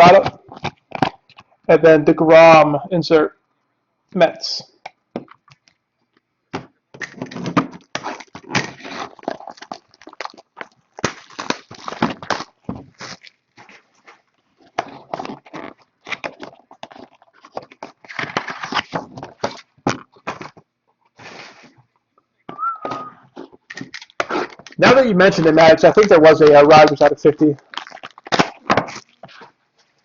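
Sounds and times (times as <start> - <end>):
packaging rustling and crinkling: 7.0 - 20.6, 23.3 - 30.0.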